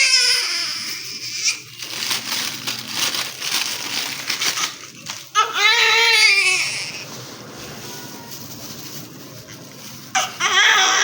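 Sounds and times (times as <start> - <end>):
baby crying: 0.0 - 1.6, 5.3 - 7.0, 10.1 - 11.0
rustling handling noise: 0.7 - 11.0.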